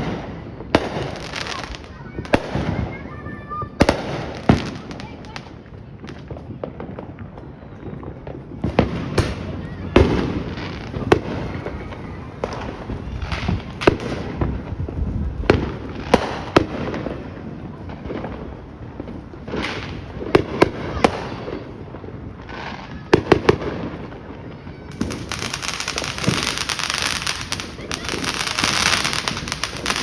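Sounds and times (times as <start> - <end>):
fireworks bangs: 0.0 - 30.0
fireworks hissing crackle: 0.0 - 30.0.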